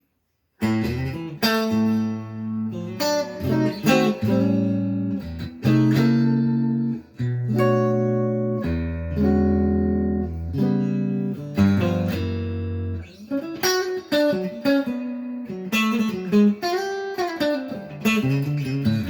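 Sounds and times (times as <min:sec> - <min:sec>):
clean electric guitar chords: 0:00.7 - 0:19.0.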